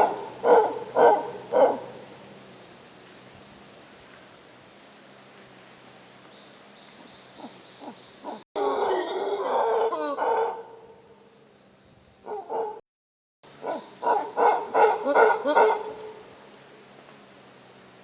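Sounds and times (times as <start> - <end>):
monkeys barking calls: 0.0 - 2.3, 7.0 - 11.0, 13.5 - 16.3.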